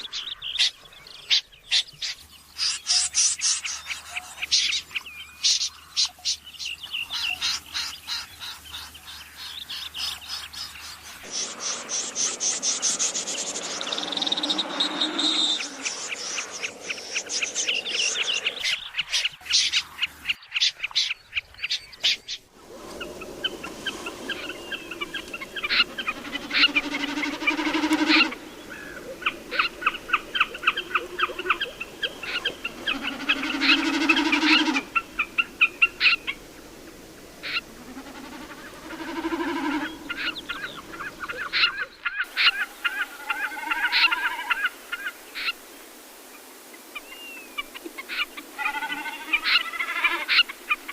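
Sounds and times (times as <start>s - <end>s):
rapid sharp bird calls: 23.8s - 36.4s.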